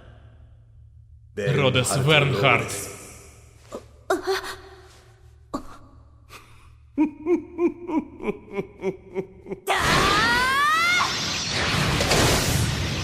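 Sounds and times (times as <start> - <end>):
man chuckling: 7.0 - 9.7.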